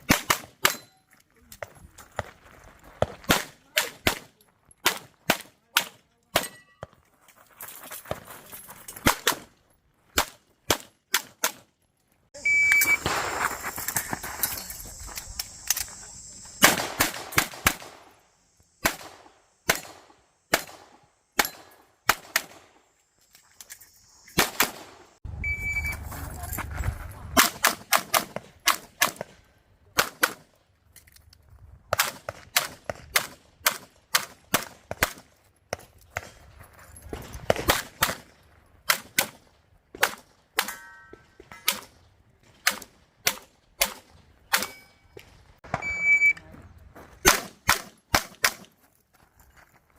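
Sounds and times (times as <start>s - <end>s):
pistol firing rapid shots: 0.0s - 0.6s, 18.8s - 22.6s.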